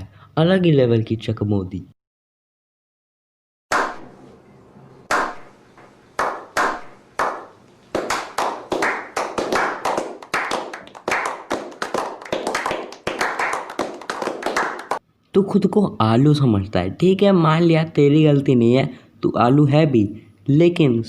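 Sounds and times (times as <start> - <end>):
hand clapping: 5.1 - 5.5, 6.2 - 15.0.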